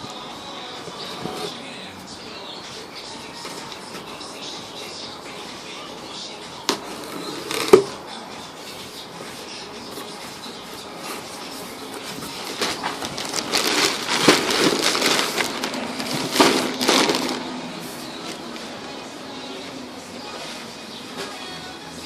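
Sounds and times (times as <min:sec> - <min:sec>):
packaging crackling and scraping: 0:06.8 - 0:07.9, 0:10.8 - 0:18.6.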